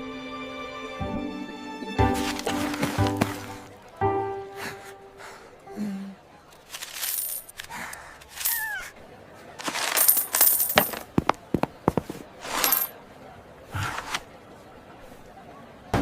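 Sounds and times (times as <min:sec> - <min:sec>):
coins jingling and clinking: 0:06.7 - 0:07.6, 0:08.3 - 0:08.7, 0:09.6 - 0:11.2, 0:12.4 - 0:12.9.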